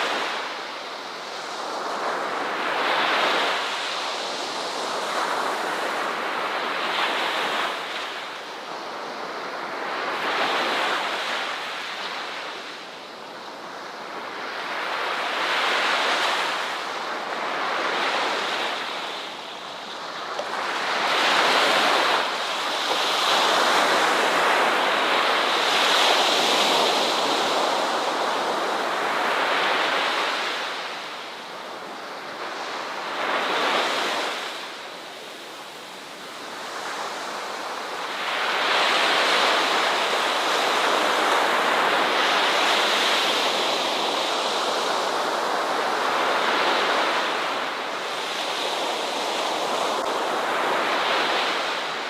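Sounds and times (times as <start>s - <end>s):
ocean waves breaking on beach: 0.0s - 52.0s
wind: 0.0s - 52.0s.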